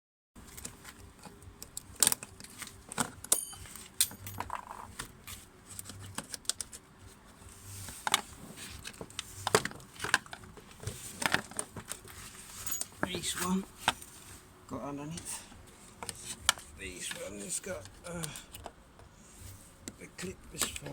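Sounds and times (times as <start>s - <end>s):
ringing metal chink: 3.3s - 4.4s
metallic clicks of tools: 3.3s - 4.7s.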